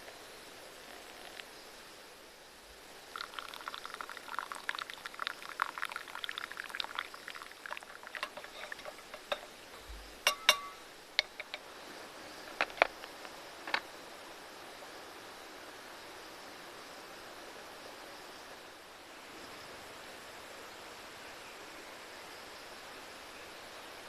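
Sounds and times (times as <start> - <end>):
liquid pouring and gurgling: 3.0 - 11.6
sharp clinks and taps: 8.2 - 11.6.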